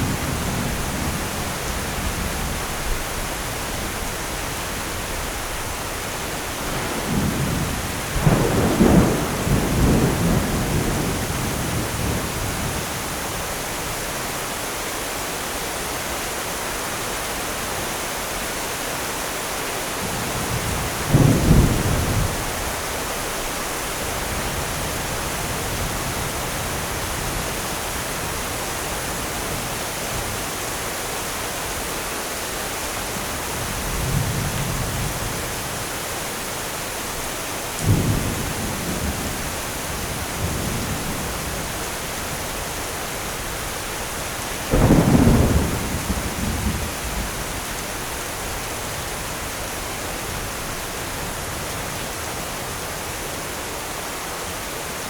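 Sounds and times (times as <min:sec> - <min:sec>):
steady rain: 0:00.0 - 0:55.0
thunder rumbling: 0:05.1 - 0:13.2, 0:20.0 - 0:27.4, 0:37.8 - 0:52.0
thunder clap: 0:06.6 - 0:12.4, 0:44.7 - 0:47.5.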